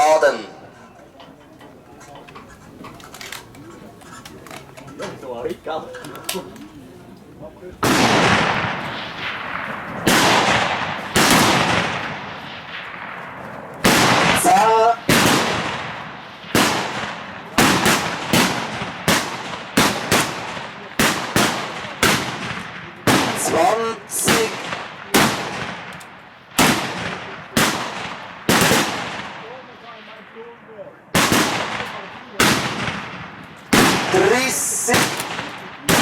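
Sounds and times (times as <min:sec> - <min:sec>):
rifle shots echoing: 0:07.8 - 0:36.0.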